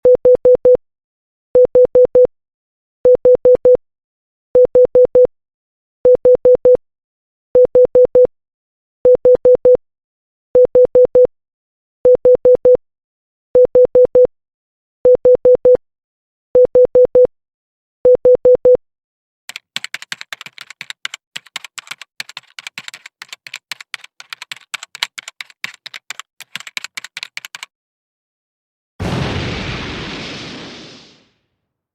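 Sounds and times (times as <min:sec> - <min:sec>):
rapid irregular clicking: 0:19.5 - 0:27.7.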